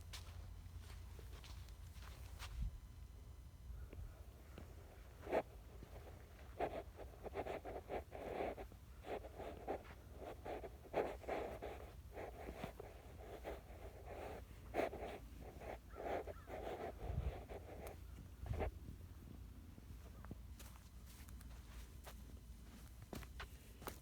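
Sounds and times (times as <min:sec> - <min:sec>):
footsteps scuffing: 0:00.1 - 0:02.7, 0:20.0 - 0:24.0.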